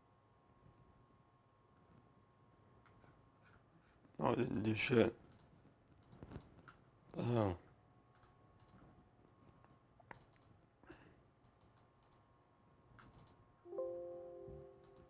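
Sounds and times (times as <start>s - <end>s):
faint computer mouse clicks: 5.3s - 6.8s, 8.1s - 8.8s, 10.0s - 12.2s, 13.0s - 13.4s
short chime of held tones: 13.7s - 15.0s.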